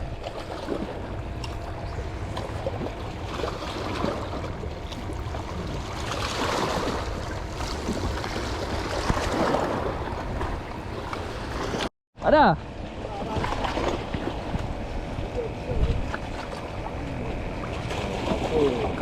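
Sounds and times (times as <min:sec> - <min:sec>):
steady low rumble: 0:00.0 - 0:11.6
sea water lapping on shore: 0:00.0 - 0:11.9, 0:12.6 - 0:19.0.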